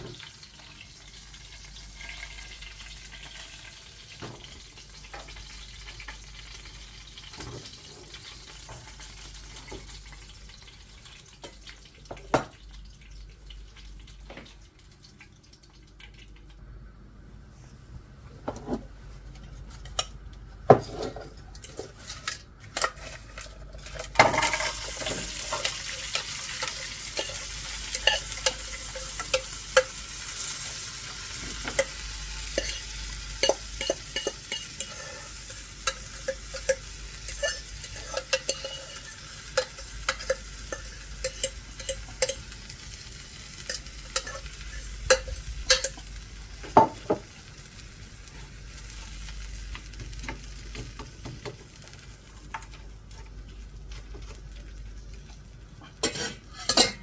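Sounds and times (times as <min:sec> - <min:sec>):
chicken sizzling in a pan: 0:00.0 - 0:15.3, 0:19.2 - 0:57.0.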